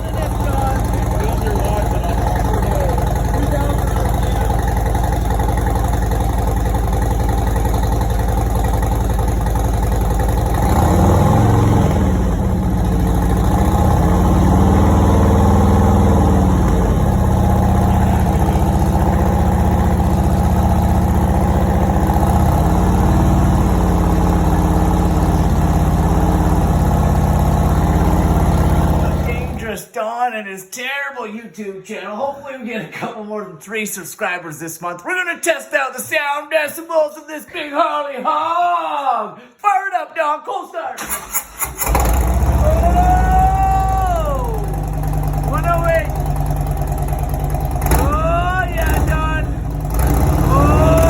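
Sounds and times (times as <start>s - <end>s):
motorcycle engine idling: 0.0s - 29.6s, 41.8s - 51.0s
motorcycle engine revving: 0.0s - 29.6s, 41.0s - 51.0s.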